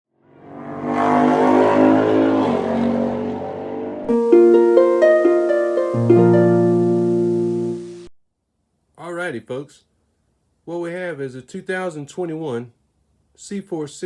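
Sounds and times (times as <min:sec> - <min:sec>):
plucked harp-like notes: 0:04.1 - 0:07.9.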